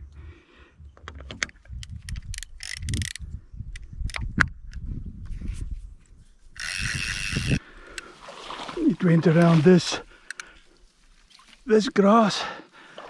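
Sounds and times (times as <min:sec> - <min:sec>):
fishing reel clicks and rattles: 0:01.2 - 0:03.2, 0:06.5 - 0:08.0.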